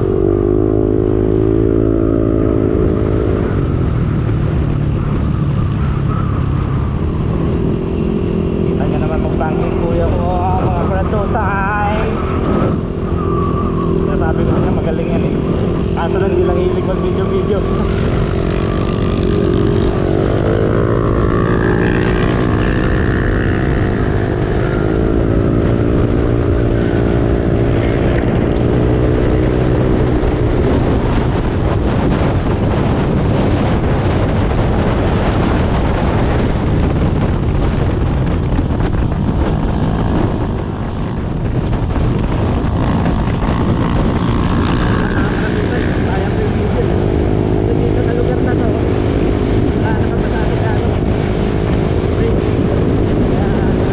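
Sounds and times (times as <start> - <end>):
motorcycle engine running: 0.0 - 53.9
wind noise on microphone: 0.0 - 53.9.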